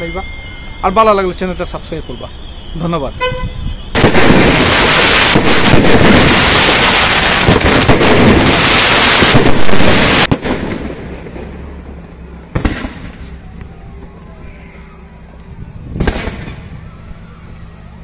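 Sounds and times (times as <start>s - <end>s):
fireworks crackling bangs: 3.9s - 13.5s, 15.9s - 16.9s.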